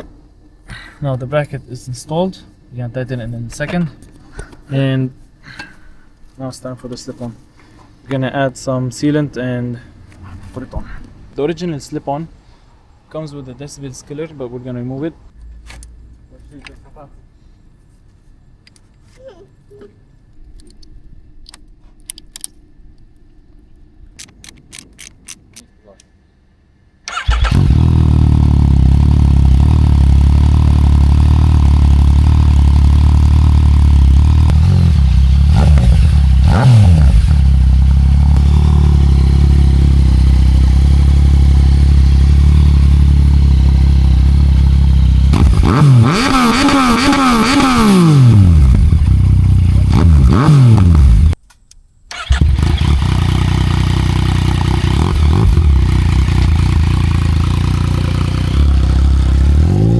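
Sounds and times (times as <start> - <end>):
motorcycle engine idling and revving: 27.1 - 51.4, 52.1 - 59.9.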